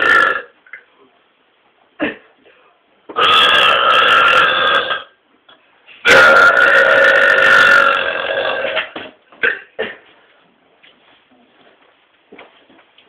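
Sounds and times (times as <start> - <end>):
man burping: 0.0 - 0.5, 3.1 - 5.1, 6.0 - 10.0.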